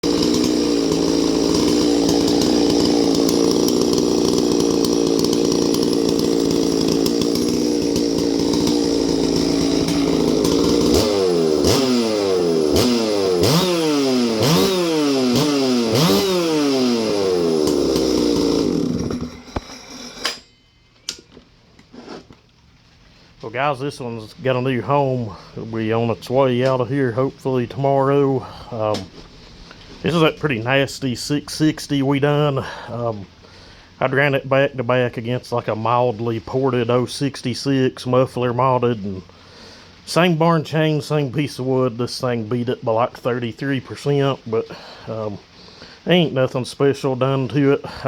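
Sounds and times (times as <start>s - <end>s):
chainsaw revving: 0.0s - 20.4s, 24.4s - 33.9s, 43.0s - 48.0s
chainsaw switch clicks: 0.2s - 12.1s, 17.6s - 20.4s.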